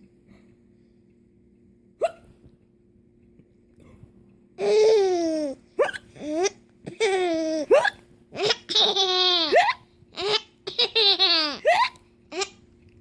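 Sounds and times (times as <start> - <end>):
child giggling: 6.3 - 12.6
child hiccuping: 7.6 - 8.0.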